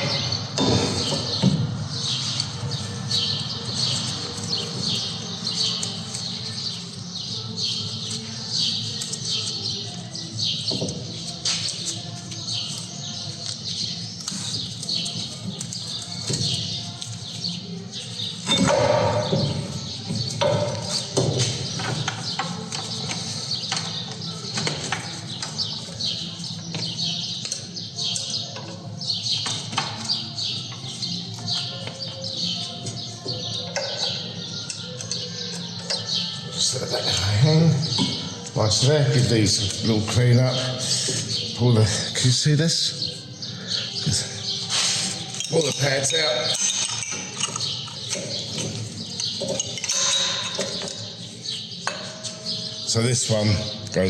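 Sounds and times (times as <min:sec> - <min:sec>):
birds chirping: 0:00.0 - 0:54.0
clicks and knocks of hand work: 0:46.5 - 0:51.2.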